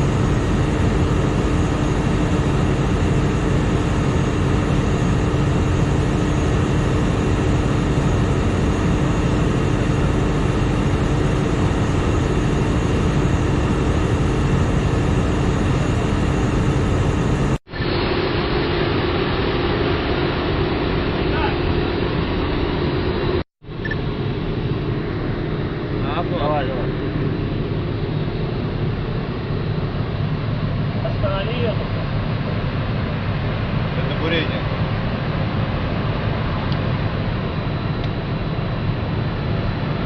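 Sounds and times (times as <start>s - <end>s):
top drive mechanical hum: 0.0s - 17.6s.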